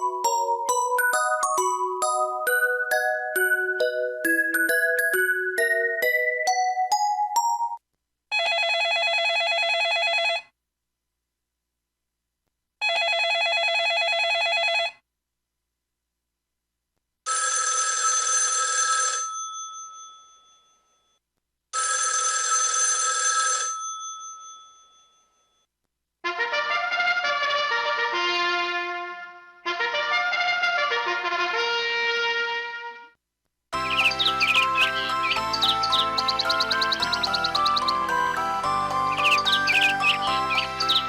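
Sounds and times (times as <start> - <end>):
electronic phone ring: 8.3 - 10.5, 12.8 - 15.0, 17.3 - 20.4, 21.8 - 25.0, 33.8 - 41.0
bell-style phone ring: 17.3 - 21.2, 21.8 - 25.7, 33.8 - 41.0.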